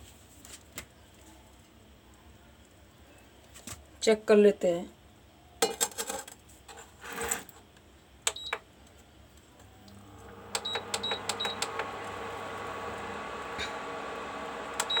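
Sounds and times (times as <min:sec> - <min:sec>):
cooktop fan humming: 0:05.6 - 0:15.0.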